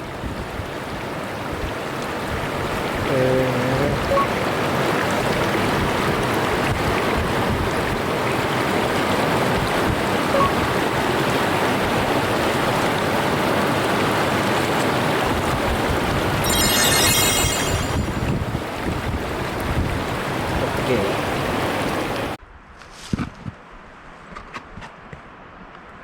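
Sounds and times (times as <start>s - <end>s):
stream water rushing: 0.6s - 22.4s
brief high ringing: 16.4s - 18.4s.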